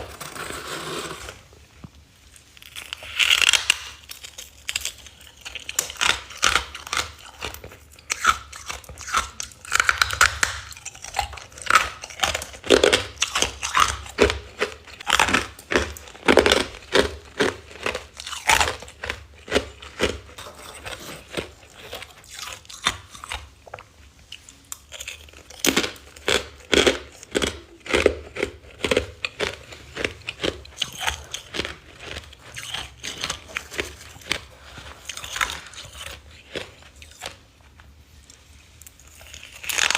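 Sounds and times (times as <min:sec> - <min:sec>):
crunching ice: 0:24.7 - 0:37.4, 0:39.1 - 0:39.9.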